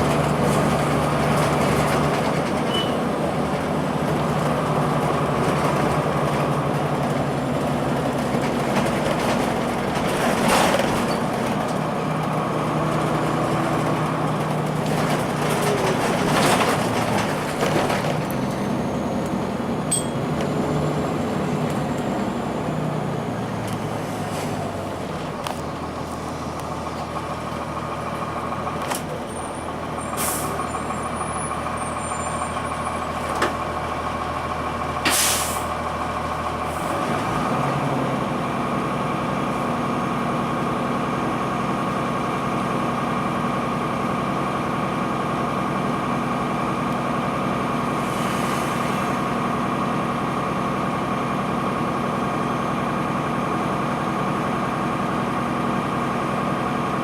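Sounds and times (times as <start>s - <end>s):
bus diesel engine: 0.0s - 57.0s
air brake hisses: 30.2s - 30.6s, 35.0s - 35.7s, 48.0s - 49.2s.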